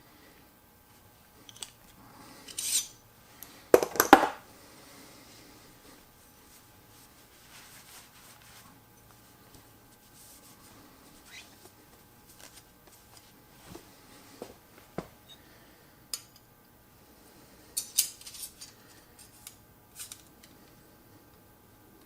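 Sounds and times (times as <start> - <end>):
metallic clicks of tools handled: 1.4 - 1.8, 17.8 - 20.3.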